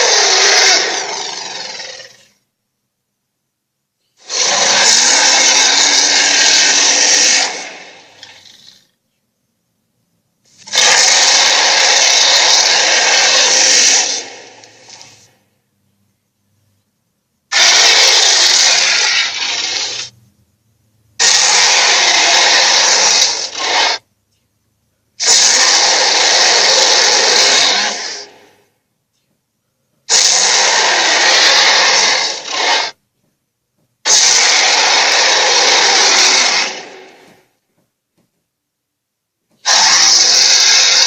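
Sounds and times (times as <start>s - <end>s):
harsh creature roars: 0.0s - 2.4s, 4.2s - 8.8s, 10.6s - 15.3s, 17.5s - 20.1s, 21.2s - 24.0s, 25.2s - 28.5s, 30.1s - 33.0s, 34.1s - 37.4s, 39.6s - 41.0s.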